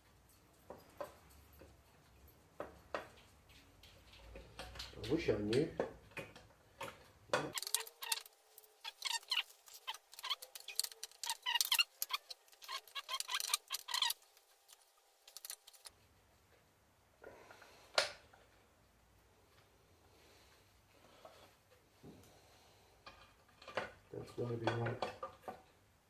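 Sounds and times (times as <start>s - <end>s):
metal gearbox parts clinking: 7.5s - 14.4s.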